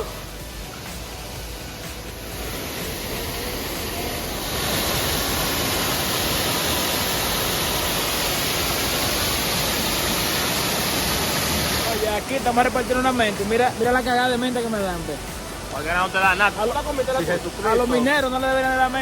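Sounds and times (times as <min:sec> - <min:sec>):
waterfall rushing: 0:00.0 - 0:19.0.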